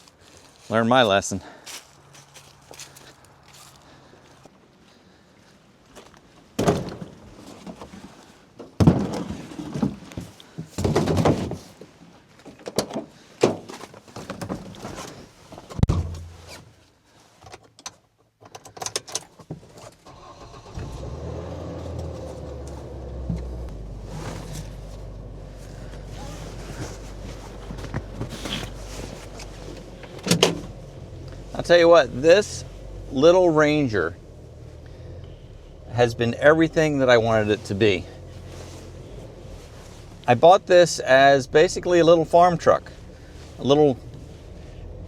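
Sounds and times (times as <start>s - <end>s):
knocks and thumps: 8.6s - 11.7s, 15.6s - 16.5s
truck engine starting and running: 20.0s - 45.0s.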